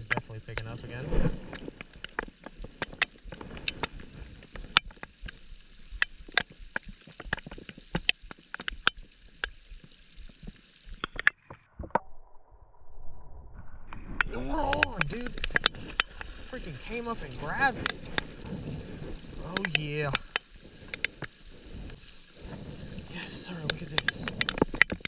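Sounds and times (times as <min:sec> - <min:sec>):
rain drops ticking: 0:00.0 - 0:11.6, 0:13.9 - 0:25.0.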